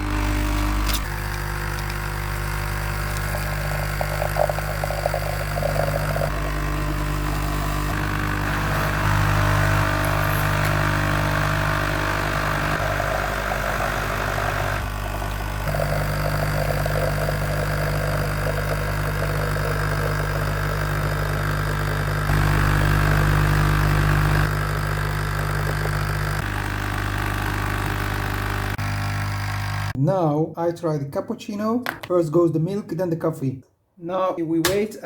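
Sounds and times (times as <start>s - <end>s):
hissing and sputtering: 0.0s - 11.3s
coffee machine pump buzzing: 0.0s - 30.0s.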